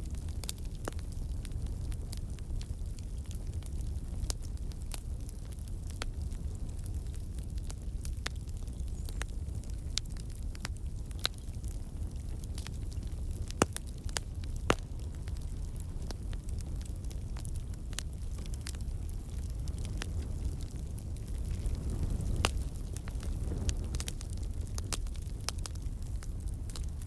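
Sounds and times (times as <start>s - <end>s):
campfire flames rumbling: 0.0s - 27.0s
wood crackling and popping: 0.0s - 27.0s.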